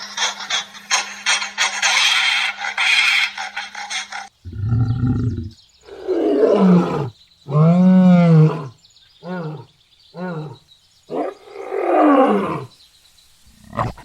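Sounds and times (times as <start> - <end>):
chattering animal calls: 0.0 - 12.7
large animal roaring: 4.4 - 12.7.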